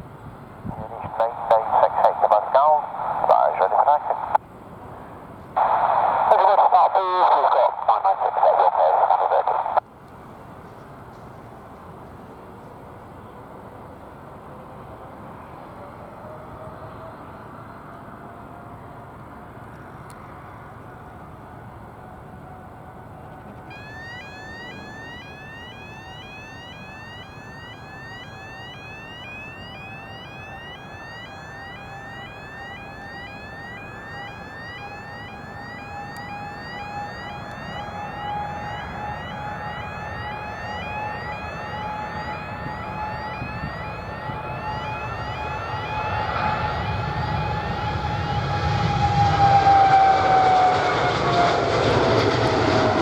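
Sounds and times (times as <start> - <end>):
faint high rising chirps: 23.7 - 47.6
jet engines roaring: 23.7 - 53.0.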